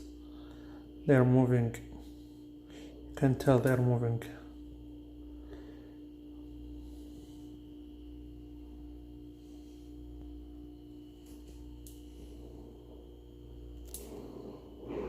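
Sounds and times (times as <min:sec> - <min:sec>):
low electrical hum: 0:00.0 - 0:15.0
steady tone: 0:04.4 - 0:15.0.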